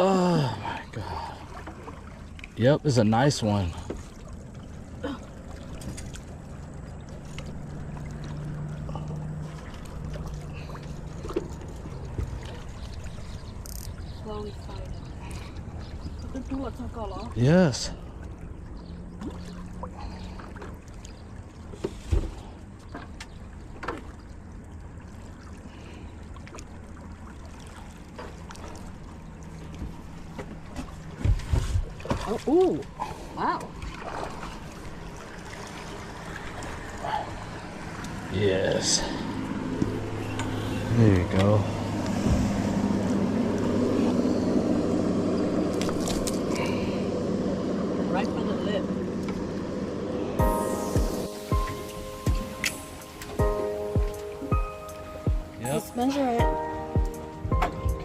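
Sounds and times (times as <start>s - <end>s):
boat motor humming: 0.0s - 58.0s
water lapping and trickling: 0.0s - 58.0s
rumbling background: 24.4s - 58.0s
steady low hum: 39.0s - 58.0s.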